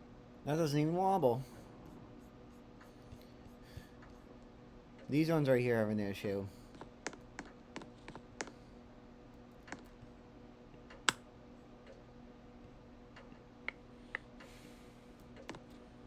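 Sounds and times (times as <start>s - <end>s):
faint steady hum: 0.0s - 16.0s
irregular clicks and ticks: 13.1s - 13.8s.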